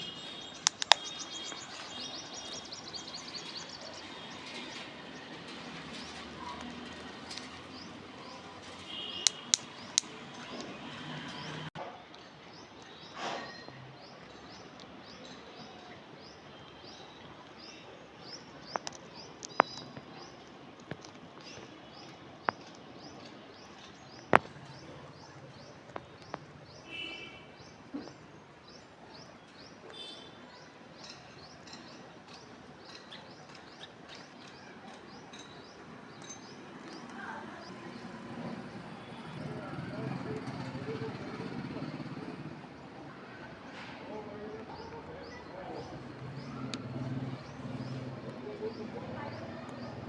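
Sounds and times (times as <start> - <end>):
birds chirping: 0.0 - 50.0
sharp clicks: 0.6 - 1.6, 9.2 - 10.8.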